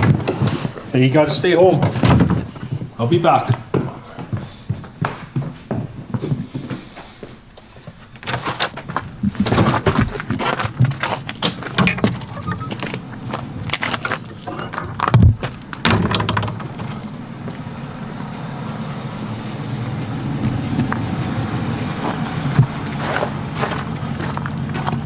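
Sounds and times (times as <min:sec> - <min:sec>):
truck engine humming: 0:00.0 - 0:25.0
knocks: 0:08.8 - 0:18.5.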